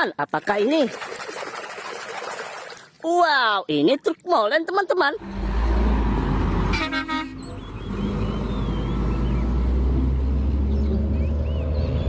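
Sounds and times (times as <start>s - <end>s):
heavy truck engine rumbling: 5.2s - 12.0s
truck horn toot: 6.7s - 7.6s.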